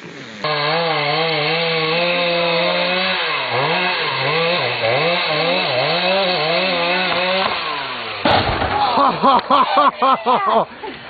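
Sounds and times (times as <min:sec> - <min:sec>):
chainsaw running: 0:00.0 - 0:10.4
sudden loud noise: 0:08.2 - 0:09.2.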